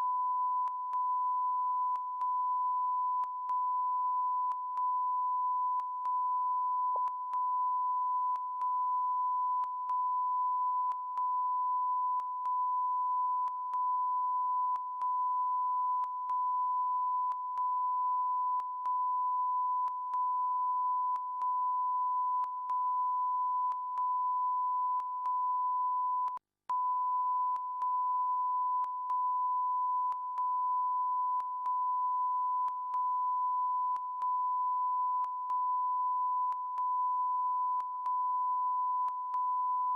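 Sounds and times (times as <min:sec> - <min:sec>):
steady electronic beep tone: 0:00.0 - 0:39.9.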